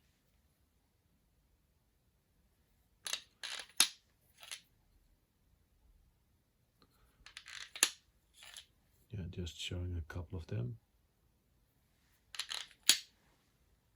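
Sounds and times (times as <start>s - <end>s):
metal collets clinking: 7.3s - 8.7s, 12.4s - 13.1s.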